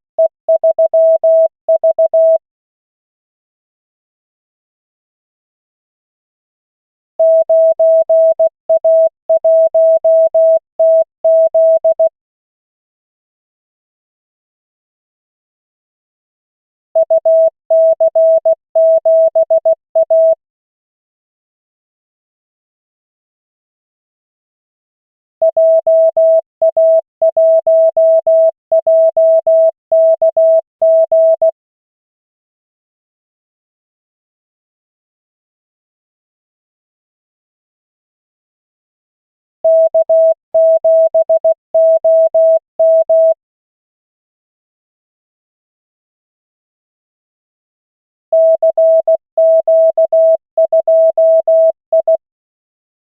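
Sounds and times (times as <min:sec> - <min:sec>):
morse code tone: 0:00.2 - 0:02.4, 0:17.0 - 0:20.4, 0:25.5 - 0:31.6, 0:39.7 - 0:43.4, 0:48.4 - 0:52.2.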